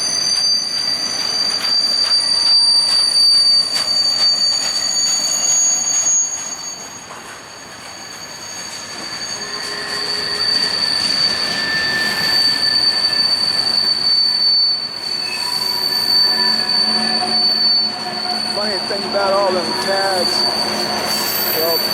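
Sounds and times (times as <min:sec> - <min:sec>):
wheels squealing on rail: 0:00.0 - 0:21.9.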